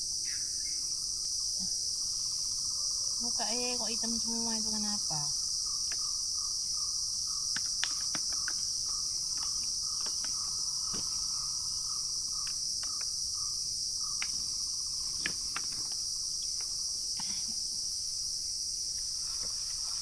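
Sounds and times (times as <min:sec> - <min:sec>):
insects droning: 0:00.0 - 0:20.0
small clicks and snaps: 0:07.5 - 0:08.7, 0:09.3 - 0:11.0, 0:12.4 - 0:13.2, 0:15.1 - 0:16.8.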